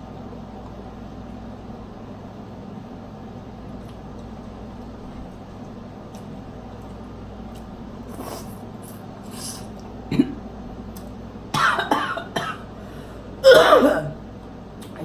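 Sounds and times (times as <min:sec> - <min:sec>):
woman coughing: 0:10.1 - 0:10.4, 0:11.6 - 0:12.8, 0:13.4 - 0:14.2
breathy sounds: 0:12.7 - 0:13.4.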